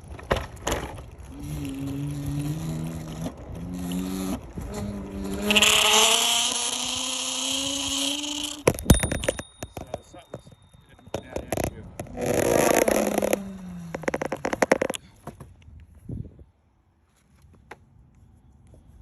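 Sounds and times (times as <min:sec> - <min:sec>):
electric scooter motor whine: 0:00.0 - 0:09.9, 0:11.0 - 0:15.0
high-pitched screech: 0:01.4 - 0:08.7.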